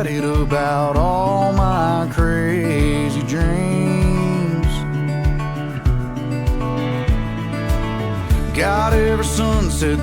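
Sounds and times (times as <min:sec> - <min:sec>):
person singing: 0:00.0 - 0:05.2, 0:08.4 - 0:10.0
guitar: 0:00.0 - 0:10.0
steady drum beat: 0:00.0 - 0:10.0.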